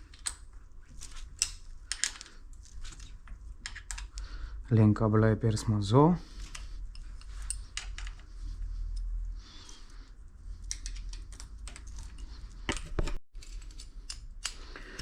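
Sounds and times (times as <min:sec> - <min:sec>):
clicks of metal bike parts: 0:10.6 - 0:15.0.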